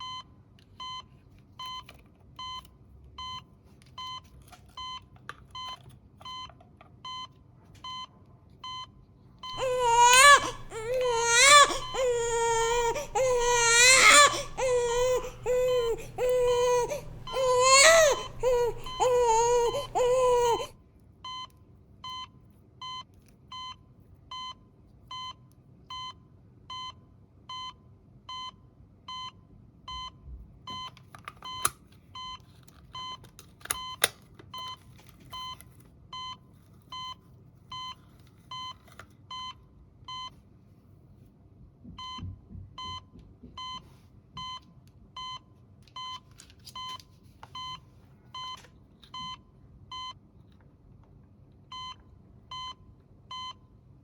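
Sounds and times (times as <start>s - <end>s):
toy recorded baby cry: 9.6s - 20.7s.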